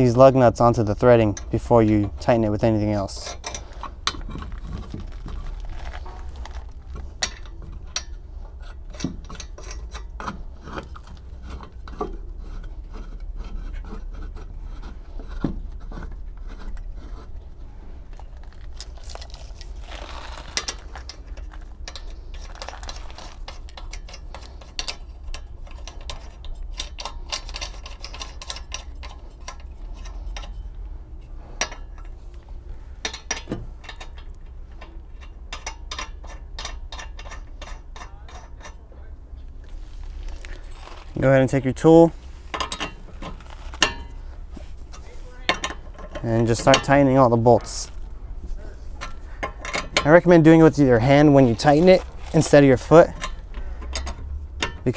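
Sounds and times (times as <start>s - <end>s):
lug nuts clinking: 0.0s - 17.4s, 18.1s - 54.9s
metal scraping on threads: 0.0s - 54.9s.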